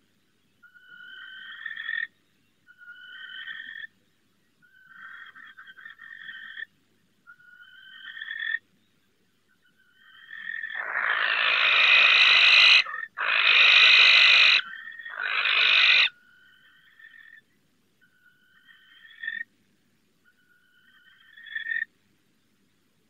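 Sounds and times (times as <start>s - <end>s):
thin owl calls: 0.6s - 3.9s, 4.6s - 8.6s, 9.5s - 19.5s, 20.2s - 21.9s
barn owls screeching: 9.9s - 17.4s.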